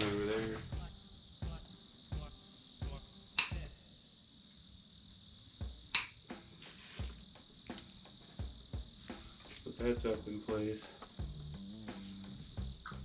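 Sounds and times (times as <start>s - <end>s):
sharp clicks: 3.4s - 3.6s, 5.9s - 6.2s
footsteps on shop floor: 5.7s - 10.1s.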